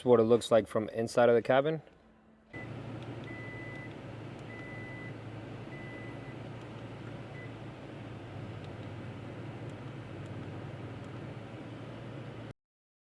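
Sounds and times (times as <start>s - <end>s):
truck engine hum: 2.4s - 12.5s.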